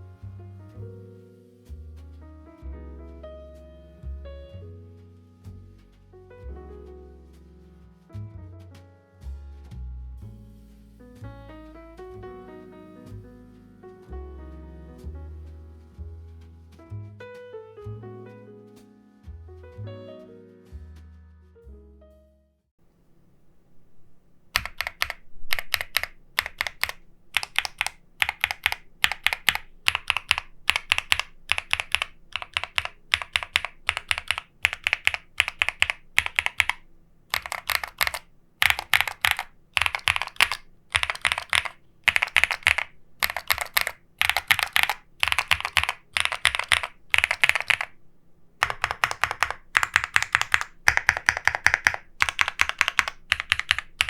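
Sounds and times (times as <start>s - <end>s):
mechanical keyboard typing: 23.1s - 48.0s, 48.6s - 54.0s.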